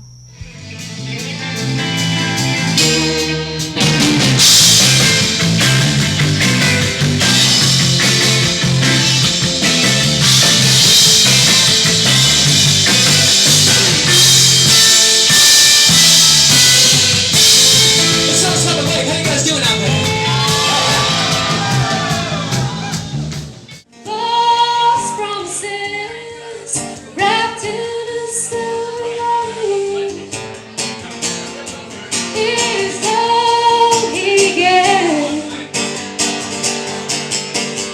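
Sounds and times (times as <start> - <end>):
cymbals crashing: 0.0 - 23.5
bass line: 0.0 - 23.8
drums: 0.0 - 37.9
person singing: 16.5 - 23.1.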